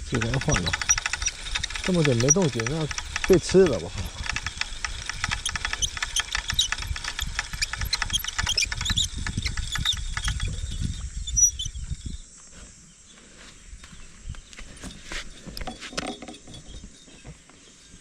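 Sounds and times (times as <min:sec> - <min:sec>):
fishing reel clicking: 0:00.0 - 0:11.7
handling rumble: 0:00.0 - 0:12.2.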